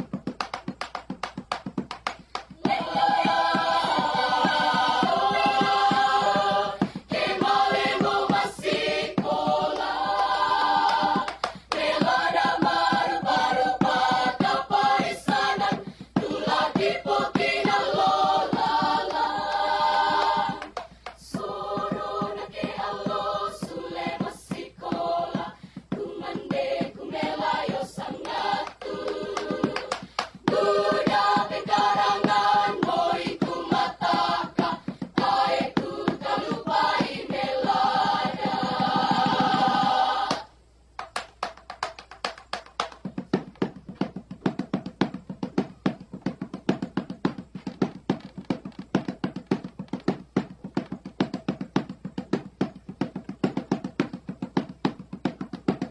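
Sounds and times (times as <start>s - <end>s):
choir singing in parts: 2.5s - 40.6s.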